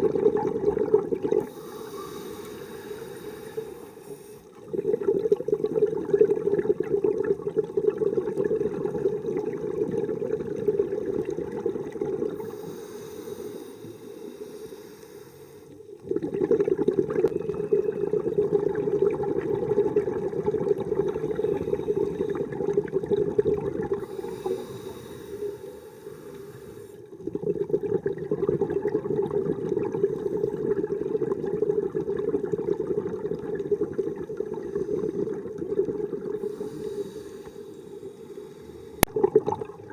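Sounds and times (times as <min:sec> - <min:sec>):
exhaled bubbles underwater: 0:00.0 - 0:39.9
regulator inhale hiss: 0:01.4 - 0:04.6, 0:12.4 - 0:15.9, 0:21.0 - 0:22.5, 0:24.0 - 0:27.1, 0:36.4 - 0:39.1.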